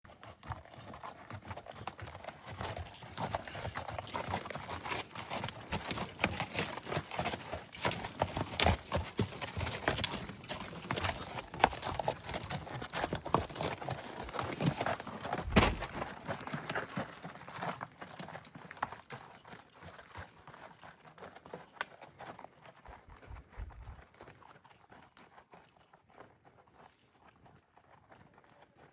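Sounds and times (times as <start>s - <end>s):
clattering steps: 15.4s - 16.2s.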